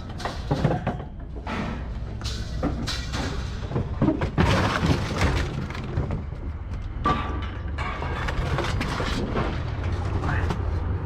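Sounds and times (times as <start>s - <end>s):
scrap metal crashing onto pile: 0.0s - 6.3s.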